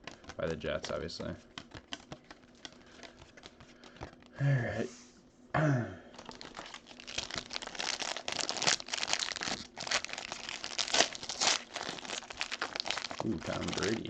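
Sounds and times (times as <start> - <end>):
plastic wrapper tearing and crinkling: 6.2 - 14.0.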